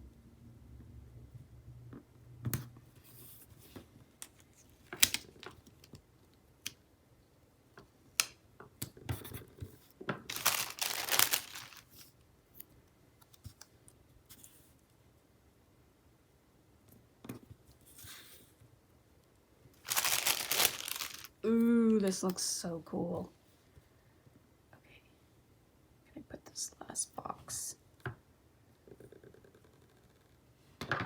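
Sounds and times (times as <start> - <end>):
sticker peeling crinkle: 10.3 - 12.0, 19.8 - 21.4
paper rustling: 10.3 - 12.1, 19.8 - 21.3.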